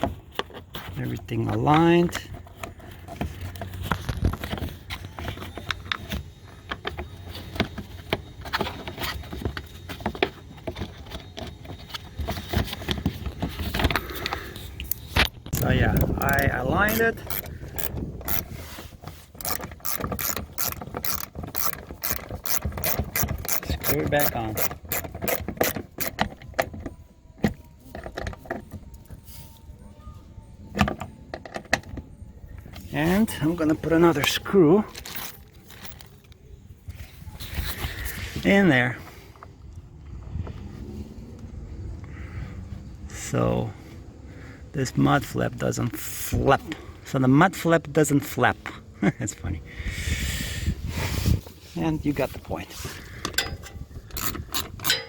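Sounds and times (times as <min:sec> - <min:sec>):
socket ratchet clicking: 0:14.8 - 0:18.5, 0:19.4 - 0:26.3, 0:53.4 - 0:55.0.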